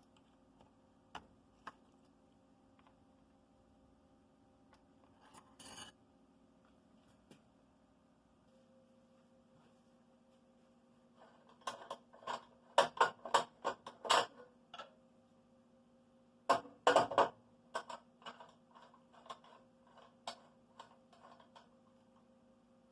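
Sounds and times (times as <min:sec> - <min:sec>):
clicks and knocks of objects: 0:11.2 - 0:14.9, 0:16.5 - 0:21.8.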